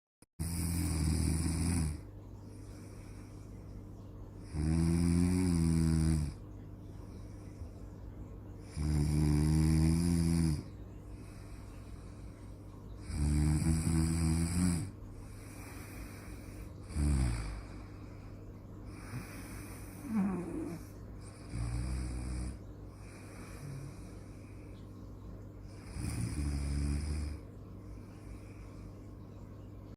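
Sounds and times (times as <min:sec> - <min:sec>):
person snoring: 0:00.4 - 0:02.0, 0:04.4 - 0:06.4, 0:08.6 - 0:12.2, 0:13.0 - 0:18.1, 0:18.8 - 0:24.4, 0:25.7 - 0:27.4.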